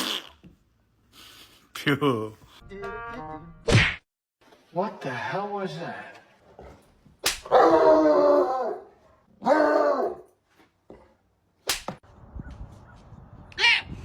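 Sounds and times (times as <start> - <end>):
sharp slap-like crack: 3.7 - 4.0, 7.2 - 7.6, 11.6 - 12.0
dog yelping: 7.5 - 10.3.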